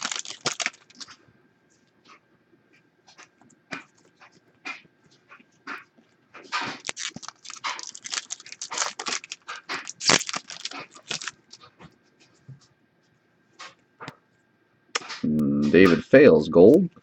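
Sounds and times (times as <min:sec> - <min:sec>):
cards rustling and scraping: 0:00.0 - 0:01.2, 0:03.1 - 0:12.4.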